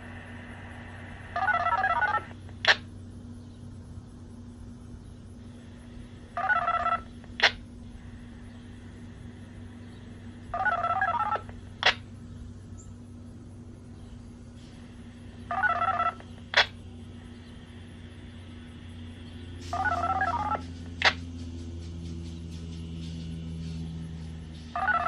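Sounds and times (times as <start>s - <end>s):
low steady hum: 0.0s - 25.0s
touch-tone dialing tones: 1.3s - 2.8s, 10.6s - 12.0s, 15.5s - 16.7s, 19.8s - 20.6s
sharp click: 20.8s - 21.4s.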